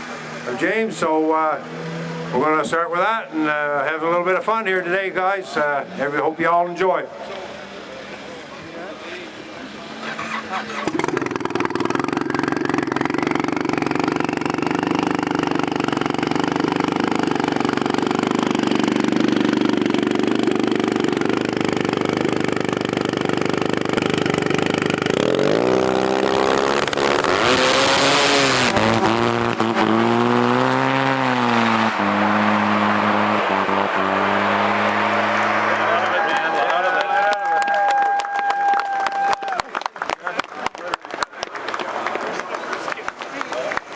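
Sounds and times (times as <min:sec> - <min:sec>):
snowmobile engines droning: 0:07.3 - 0:38.1
snowmobile engine revving: 0:09.6 - 0:37.2.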